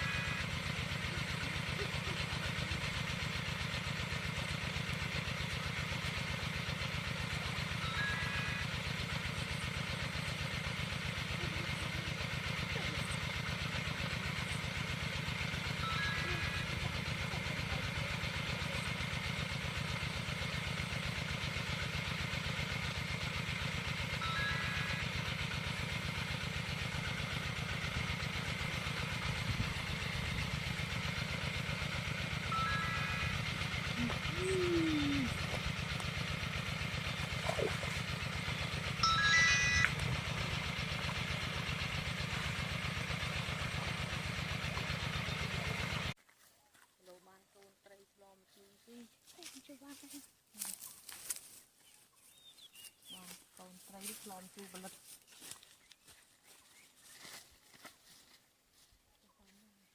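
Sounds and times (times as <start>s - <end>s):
small engine running steadily: 0.0s - 59.9s.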